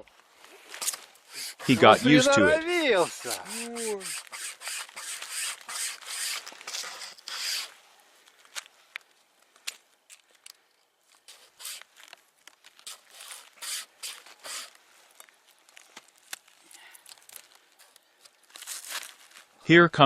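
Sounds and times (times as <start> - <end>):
string saw rasping through wood: 0.8 - 7.7, 11.3 - 11.9, 12.8 - 14.8.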